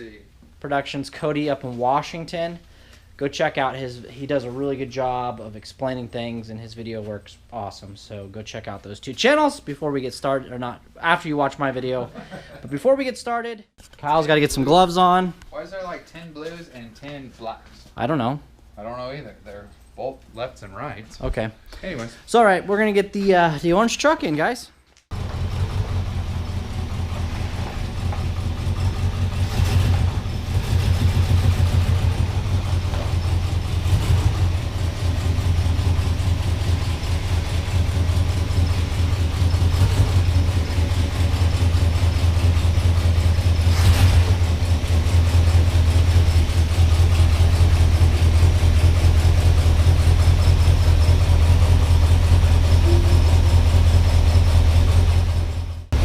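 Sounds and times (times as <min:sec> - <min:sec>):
engine droning: 0:25.1 - 0:56.0
engine knocks: 0:25.1 - 0:56.0.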